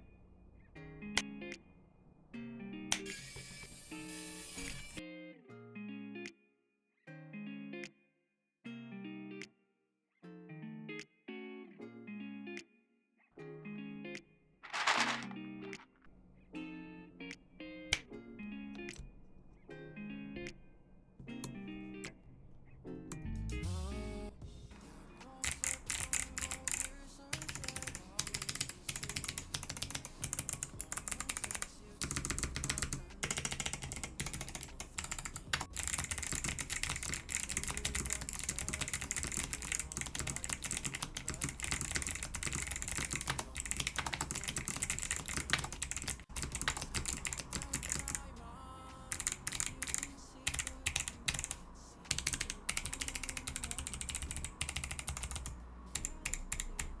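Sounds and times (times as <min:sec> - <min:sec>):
background music: 0:13.4 - 0:57.0
mechanical keyboard typing clicks: 0:25.4 - 0:48.2, 0:49.1 - 0:56.9.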